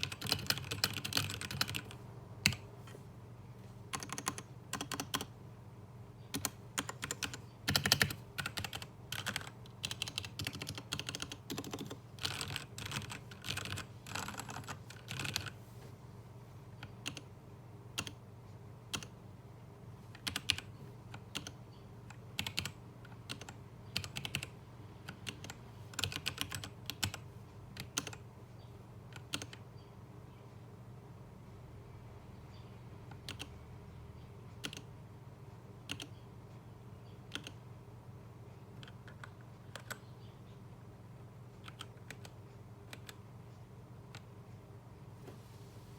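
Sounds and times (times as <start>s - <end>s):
typing on mechanical keyboard: 0.0s - 2.6s, 3.9s - 5.3s, 6.3s - 15.6s, 20.1s - 21.6s, 22.3s - 27.2s, 34.6s - 34.9s, 37.3s - 37.6s, 38.8s - 40.0s.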